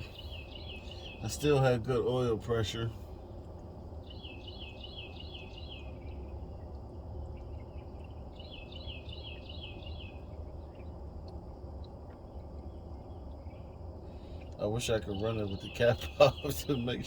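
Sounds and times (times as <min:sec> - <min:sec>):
bird chirping: 0:00.0 - 0:02.9, 0:04.0 - 0:11.0, 0:12.6 - 0:17.0
diesel truck engine idling: 0:00.0 - 0:05.4, 0:14.2 - 0:17.0.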